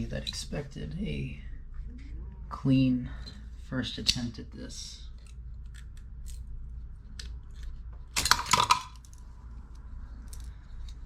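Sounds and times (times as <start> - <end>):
small hard objects clattering: 8.2 - 9.2.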